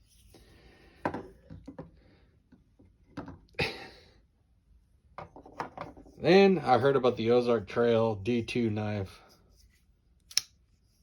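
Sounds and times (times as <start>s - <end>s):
pocketknife clicks: 10.3s - 10.6s.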